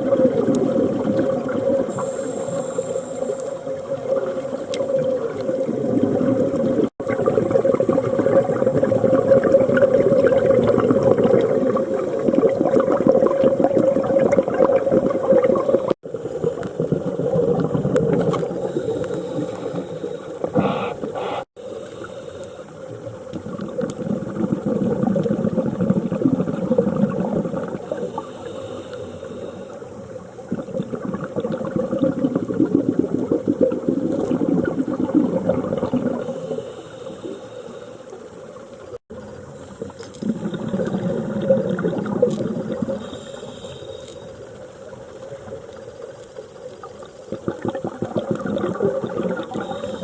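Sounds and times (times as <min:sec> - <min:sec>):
diver exhaling bubbles underwater: 0:00.0 - 0:21.5, 0:23.4 - 0:28.4, 0:30.4 - 0:36.5, 0:39.8 - 0:43.3, 0:47.3 - 0:50.0.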